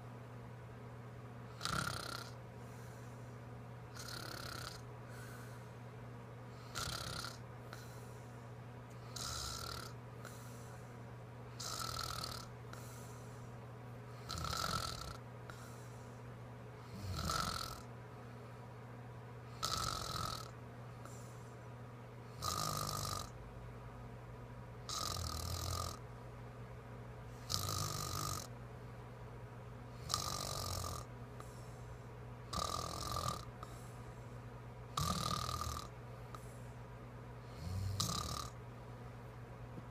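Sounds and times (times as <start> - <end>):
steady low hum: 0.0 - 39.9
woman snoring: 1.5 - 2.4, 3.9 - 5.5, 6.6 - 7.9, 9.0 - 10.5, 11.6 - 12.9, 14.2 - 15.7, 16.9 - 17.9, 19.6 - 20.5, 22.4 - 23.4, 24.9 - 26.0, 27.4 - 28.5, 30.0 - 31.1, 32.5 - 33.7, 35.0 - 35.9, 37.5 - 38.6.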